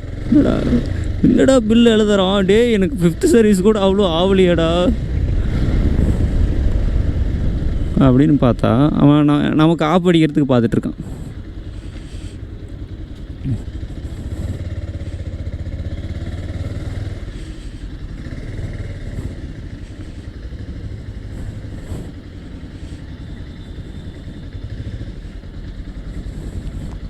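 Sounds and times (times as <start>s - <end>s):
motorcycle engine running: 0.0s - 27.0s.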